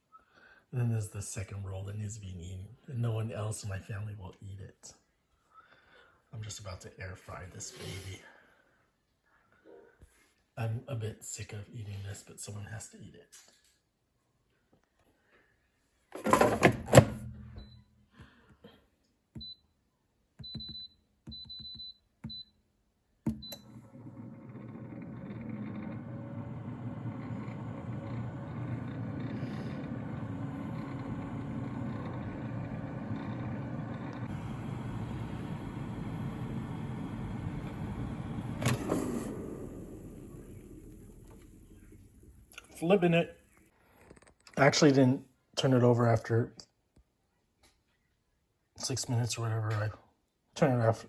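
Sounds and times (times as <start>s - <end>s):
air fryer basket clattering: 16.2s - 17.7s
fan whirring: 23.4s - 43.7s.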